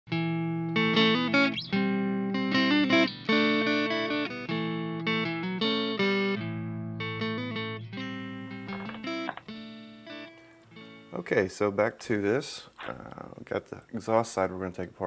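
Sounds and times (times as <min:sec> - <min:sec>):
plucked guitar tune: 0:00.1 - 0:11.9.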